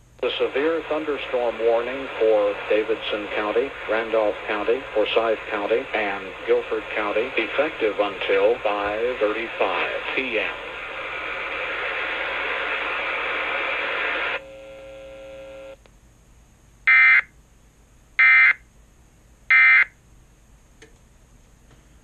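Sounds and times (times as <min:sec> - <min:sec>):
steady hiss: 0:00.0 - 0:14.4
quiet buzzing hum: 0:00.0 - 0:22.0.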